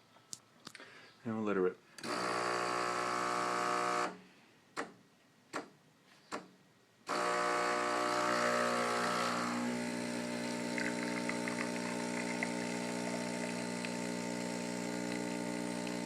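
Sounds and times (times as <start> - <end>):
espresso machine pump buzzing: 2.0 - 4.2, 7.1 - 16.0.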